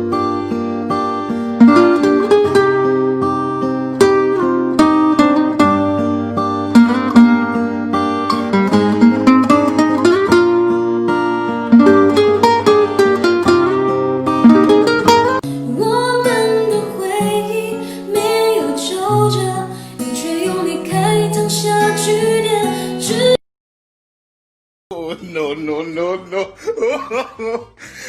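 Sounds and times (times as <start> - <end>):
plucked notes: 0.0 - 23.4
person singing: 15.4 - 23.4.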